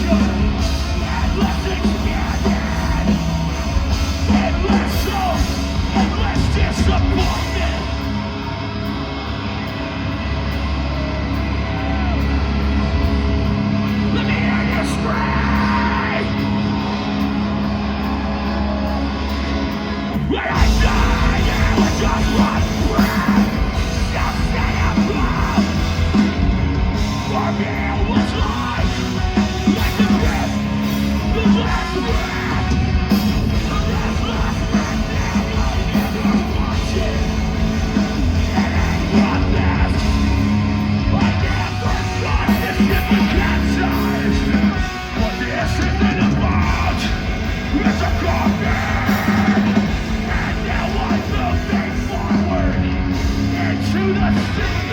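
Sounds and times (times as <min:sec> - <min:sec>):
metal band playing live: 0:00.0 - 0:54.9
screamed vocals: 0:14.1 - 0:19.6, 0:20.3 - 0:37.3, 0:38.1 - 0:52.9.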